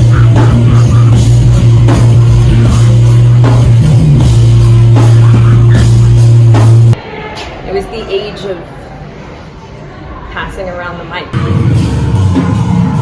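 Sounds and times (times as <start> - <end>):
heavy low drone: 0.0 - 7.0.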